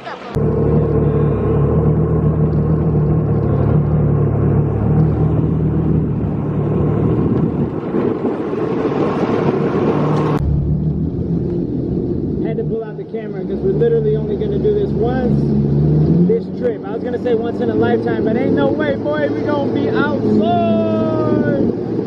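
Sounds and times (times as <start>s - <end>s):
jet ski engine running: 0.0s - 12.7s.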